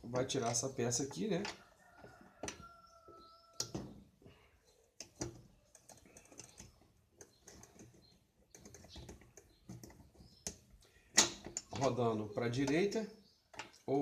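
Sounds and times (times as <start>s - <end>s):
hand tools clicking on metal parts: 0.0s - 1.7s, 4.9s - 12.9s.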